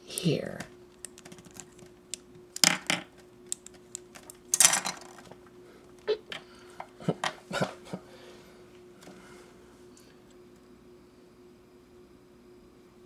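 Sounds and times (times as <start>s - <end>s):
faint steady hum: 0.0s - 13.0s
plastic parts clicking and clattering: 0.2s - 5.4s
plastic parts rattling: 0.2s - 5.4s.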